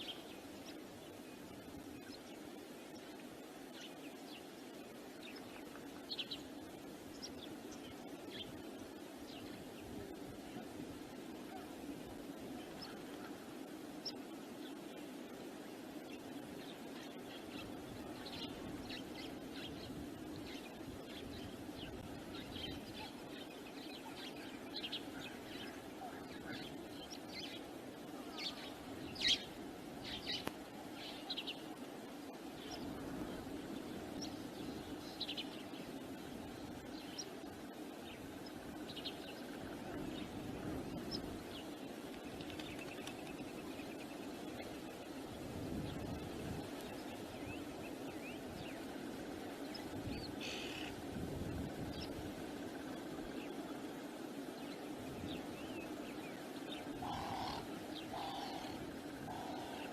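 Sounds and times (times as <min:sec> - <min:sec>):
birds chirping: 0:00.0 - 0:59.9.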